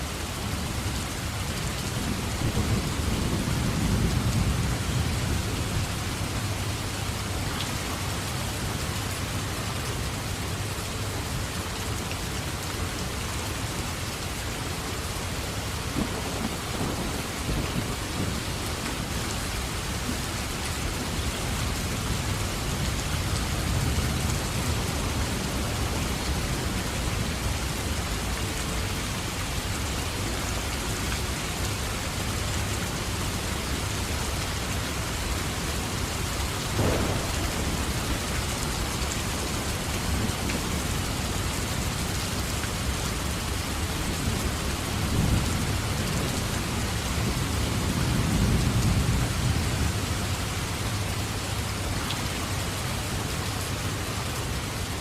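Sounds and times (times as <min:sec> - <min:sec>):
steady rain falling: 0:00.0 - 0:55.0
thunder rumbling: 0:16.0 - 0:20.0, 0:36.7 - 0:42.6.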